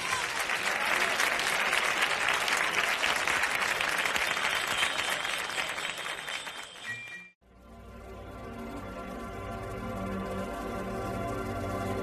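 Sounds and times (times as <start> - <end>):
audience applauding: 0.0 - 7.3.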